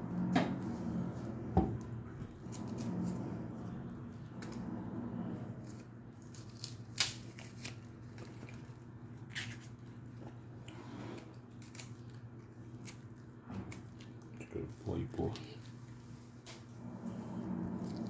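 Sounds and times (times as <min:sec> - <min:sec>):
steady low hum: 0:00.0 - 0:18.0
onion skin crackling as peeled: 0:05.6 - 0:10.2, 0:11.2 - 0:14.3.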